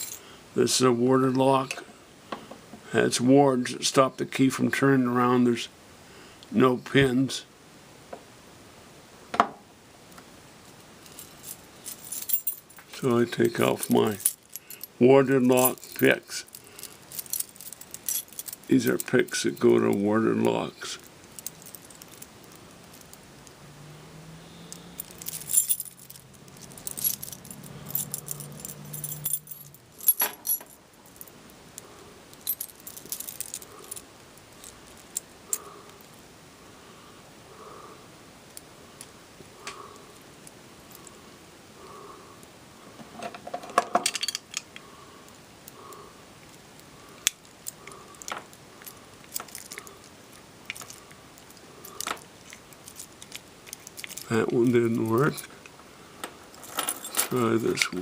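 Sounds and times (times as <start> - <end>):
low steady hum: 0.0 - 58.0
metal lock picks jangling: 11.1 - 20.0, 21.2 - 23.2, 24.7 - 31.3, 32.3 - 36.0, 43.7 - 44.8, 47.2 - 50.0, 50.6 - 55.5, 56.5 - 58.0.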